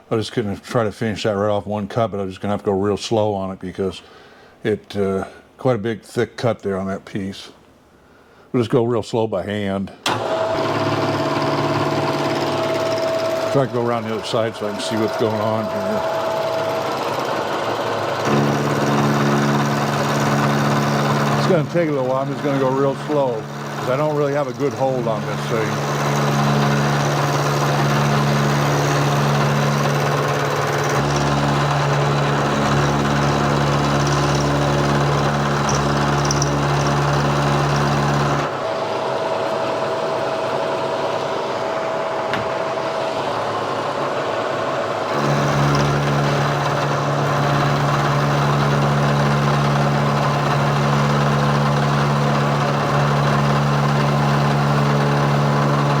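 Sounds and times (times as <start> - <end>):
milling machine cutting steel: 10.1 - 38.7, 45.1 - 56.0.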